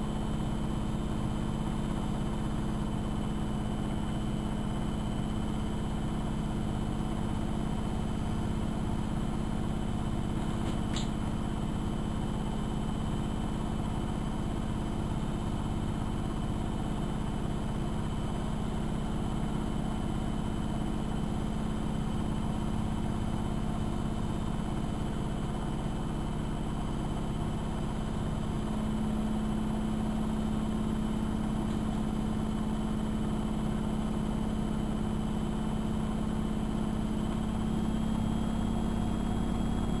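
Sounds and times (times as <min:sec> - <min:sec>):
washing machine humming: 0:00.0 - 0:16.0, 0:24.8 - 0:40.0.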